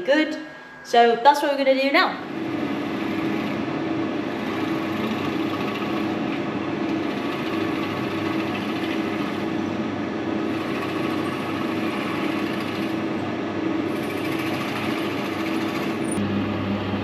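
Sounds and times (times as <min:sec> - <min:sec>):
wood lathe drilling: 0:02.2 - 0:09.6, 0:10.4 - 0:13.2, 0:13.9 - 0:16.2.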